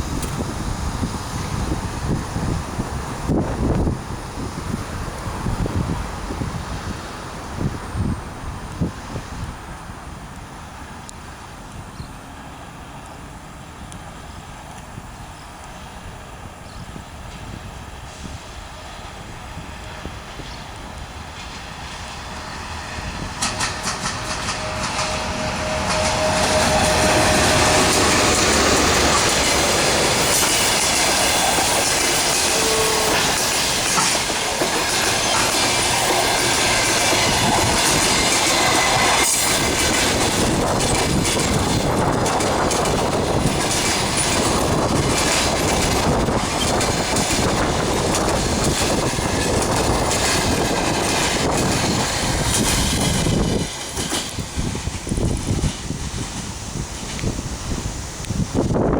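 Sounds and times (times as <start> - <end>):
passing electric train: 0.0 - 58.9
wheels clacking over rail joints: 20.3 - 58.5.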